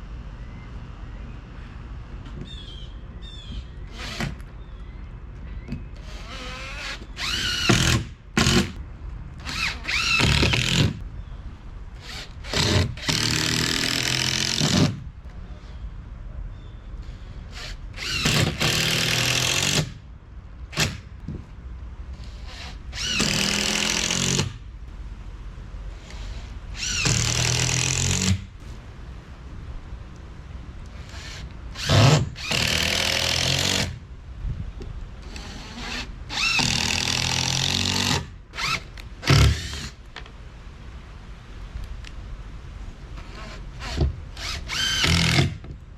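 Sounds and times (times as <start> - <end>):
power drill running: 6.0 - 8.7.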